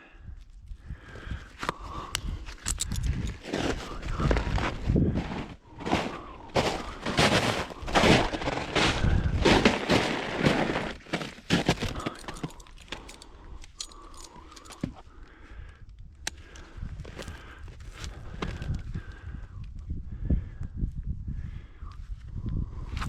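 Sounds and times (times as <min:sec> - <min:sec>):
footsteps crunching on forest floor: 0:03.4 - 0:13.2.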